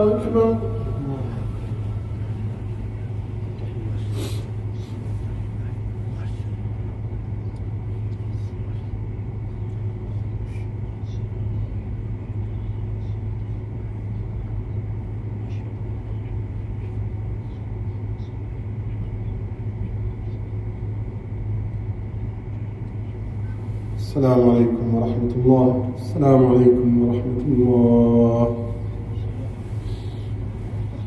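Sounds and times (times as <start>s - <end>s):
room noise: 0.0s - 6.4s
low electrical hum: 0.0s - 31.0s.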